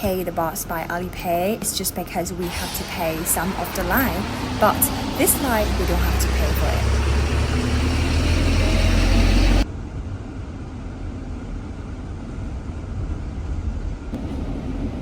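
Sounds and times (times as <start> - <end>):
minibus running noise: 0.0 - 15.0
low rumble: 2.4 - 9.7.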